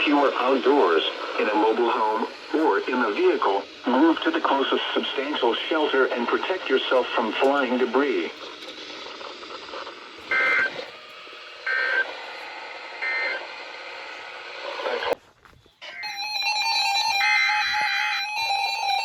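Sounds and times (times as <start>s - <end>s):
warbling digital data tones: 0.0s - 10.9s, 15.8s - 19.0s
radio hiss: 0.0s - 16.0s
stepped electronic beeping tones: 10.2s - 10.9s.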